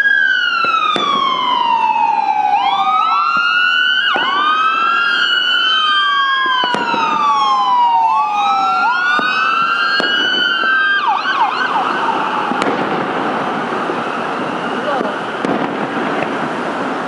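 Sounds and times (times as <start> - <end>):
emergency sirens wailing: 0.0 - 17.0
firework bangs: 0.5 - 1.9, 3.3 - 7.4, 9.0 - 11.0, 11.8 - 17.0.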